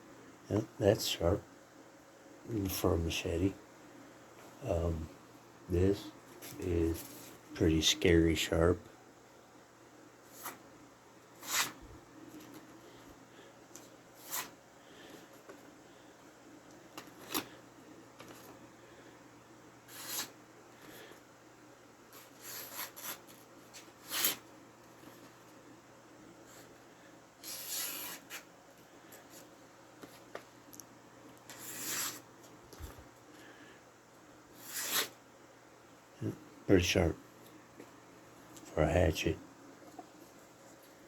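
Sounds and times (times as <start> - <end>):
hatchet blade scraping: 34.6 - 35.1.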